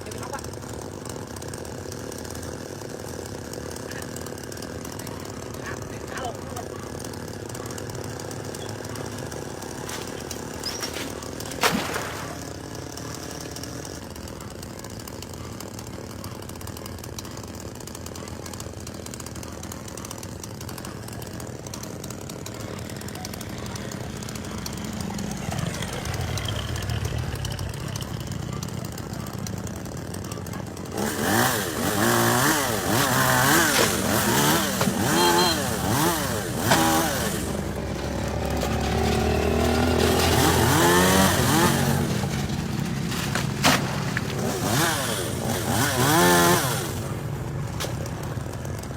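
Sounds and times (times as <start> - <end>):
chainsaw engine running: 0.0 - 48.9.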